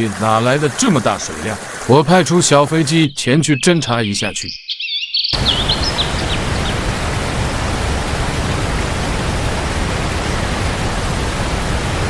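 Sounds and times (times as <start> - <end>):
waterfall roaring: 0.0 - 3.0, 5.4 - 12.0.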